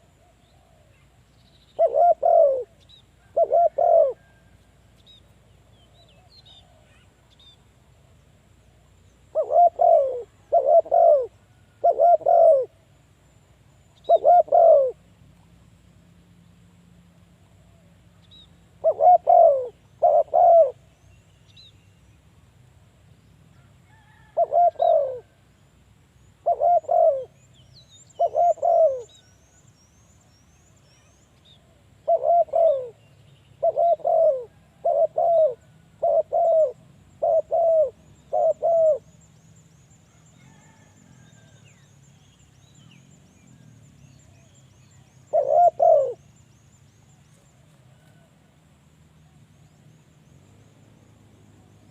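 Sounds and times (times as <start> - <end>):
faint high bird chirps: 0.0 - 7.7
dove cooing: 1.8 - 4.5, 9.3 - 12.8, 14.0 - 15.0, 18.8 - 20.8, 24.1 - 25.4, 26.4 - 27.4, 28.1 - 29.2, 32.0 - 33.0, 33.6 - 39.1, 45.3 - 46.2.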